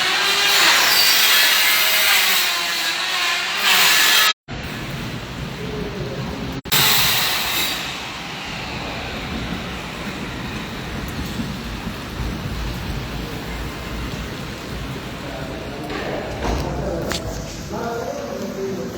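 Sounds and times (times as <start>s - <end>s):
steady rain hissing: 4.6s - 6.7s, 7.8s - 18.9s.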